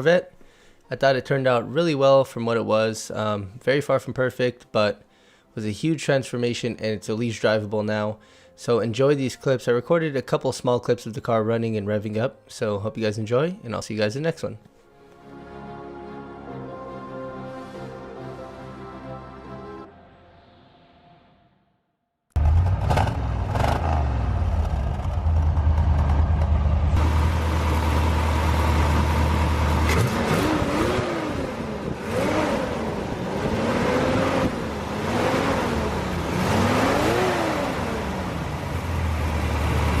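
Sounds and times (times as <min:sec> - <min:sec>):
car engine revving: 0:22.4 - 0:40.0.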